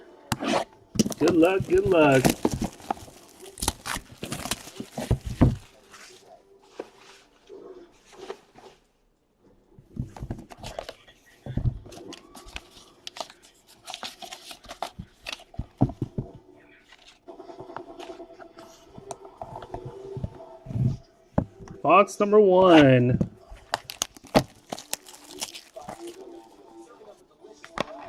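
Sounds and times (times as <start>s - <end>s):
clicks and knocks of box handling: 1.0s - 5.8s, 23.2s - 26.2s
plastic wrap crinkling and tearing: 1.0s - 6.3s, 12.0s - 15.5s, 23.5s - 26.6s.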